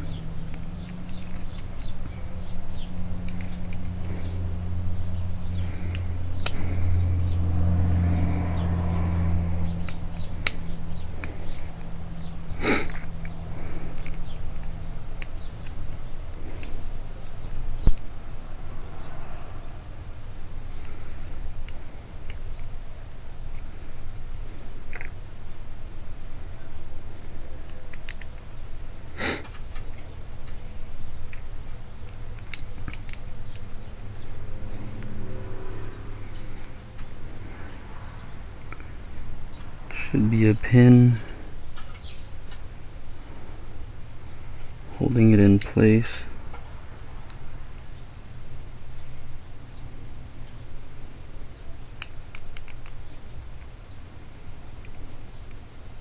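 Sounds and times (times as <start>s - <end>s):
steady low hum: 0.0s - 56.0s
metal clicks of lock parts: 0.4s - 4.3s, 27.7s - 28.5s, 31.2s - 33.7s, 52.0s - 53.7s
breathy rush of noise: 3.2s - 15.0s, 18.1s - 22.3s, 33.8s - 40.2s.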